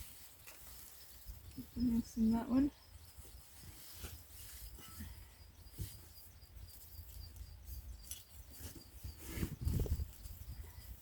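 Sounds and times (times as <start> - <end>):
small bird chirping: 0.0 - 11.0
digging in soil: 3.1 - 11.0.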